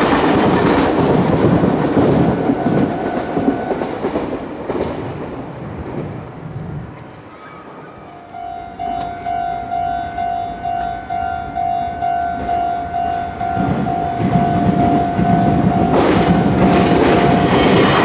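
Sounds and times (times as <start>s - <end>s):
train running noise: 0.0s - 18.0s
level crossing warning bell: 6.5s - 17.6s.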